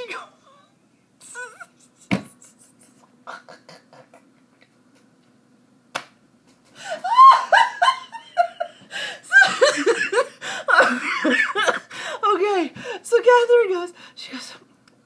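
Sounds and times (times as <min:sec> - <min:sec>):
sharp slap: 0:05.9 - 0:06.2
woman laughing: 0:06.8 - 0:11.9.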